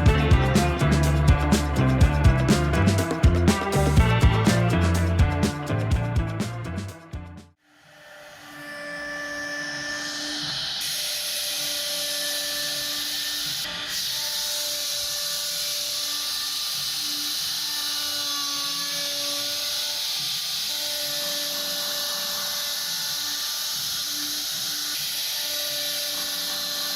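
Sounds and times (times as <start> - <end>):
woodworking power tool whining: 7.7 - 26.9
cutting hiss: 9.6 - 26.9.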